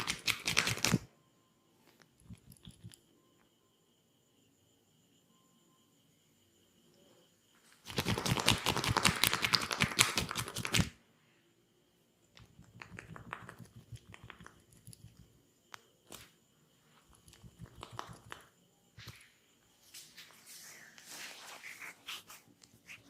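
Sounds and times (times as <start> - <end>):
massage taps and slaps: 12.4 - 15.2, 17.5 - 19.2
rubbing on skin: 19.9 - 23.0.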